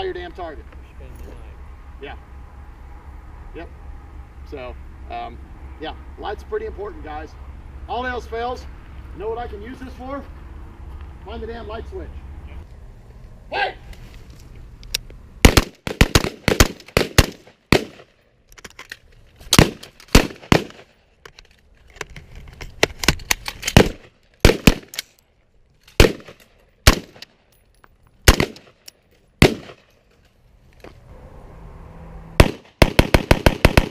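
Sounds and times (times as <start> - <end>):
rifle shots: 15.4 - 18.2, 19.5 - 21.0, 23.6 - 25.0, 25.9 - 27.3, 28.2 - 28.8, 29.4 - 29.9, 32.4 - 33.9.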